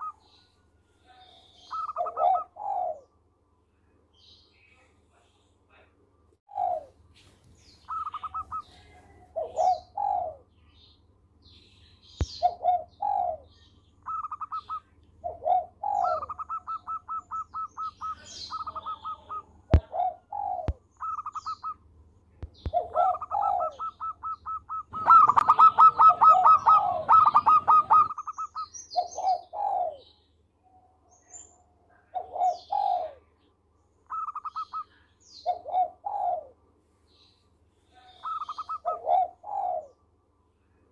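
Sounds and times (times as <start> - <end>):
dove cooing: 1.6 - 3.2, 6.5 - 7.0, 7.9 - 10.5, 12.3 - 13.5, 14.1 - 21.8, 22.6 - 30.1, 32.1 - 33.3, 34.1 - 36.6, 38.0 - 40.0.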